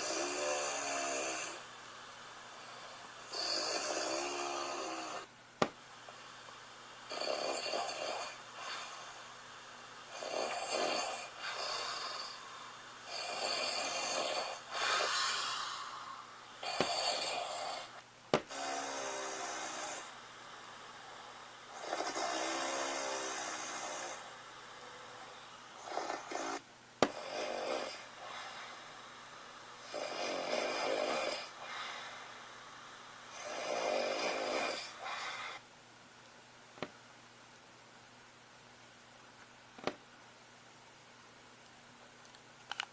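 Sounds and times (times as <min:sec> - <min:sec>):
man snoring: 0:00.0 - 0:01.7, 0:02.5 - 0:05.3, 0:07.1 - 0:09.3, 0:10.0 - 0:29.1, 0:29.8 - 0:32.6, 0:33.2 - 0:35.6.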